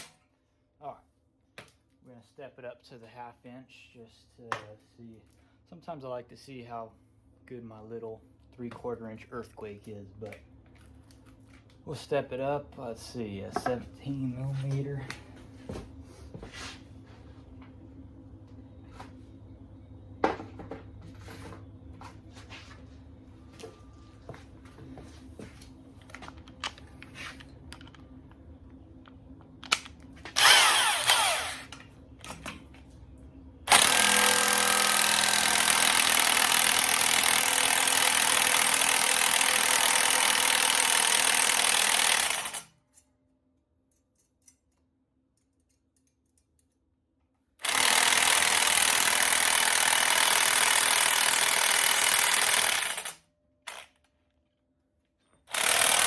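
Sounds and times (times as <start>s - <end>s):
impact wrench hammering: 33.7s - 42.6s, 47.6s - 53.9s.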